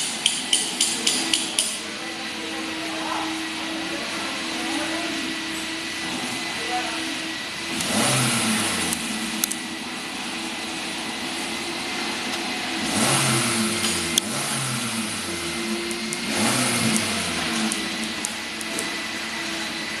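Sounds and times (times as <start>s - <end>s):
car engine revving: 1.6s - 20.0s
sharp clicks: 8.9s - 9.6s.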